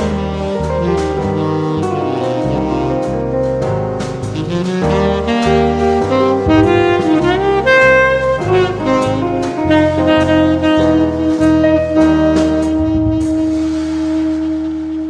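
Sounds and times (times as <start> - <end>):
light drums: 0.0 - 15.0
saxophone melody: 0.0 - 15.0
walking bass line: 0.0 - 15.0.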